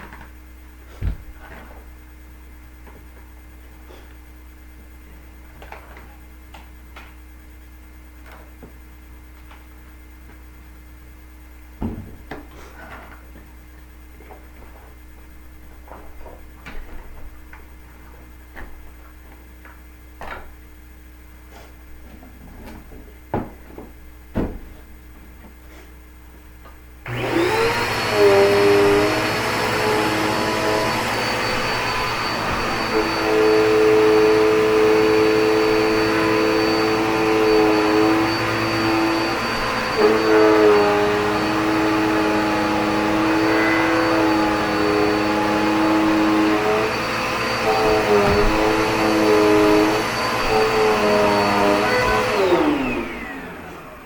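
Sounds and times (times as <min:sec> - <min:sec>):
vacuum cleaner motor whining: 0:27.0 - 0:54.0.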